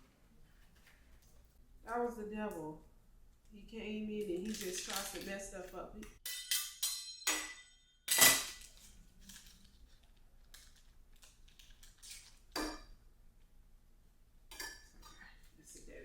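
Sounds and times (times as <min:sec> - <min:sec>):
utensils clinking and scraping: 0:04.2 - 0:13.0
metal cookware clanking: 0:06.2 - 0:09.5, 0:11.8 - 0:13.0, 0:14.5 - 0:15.2.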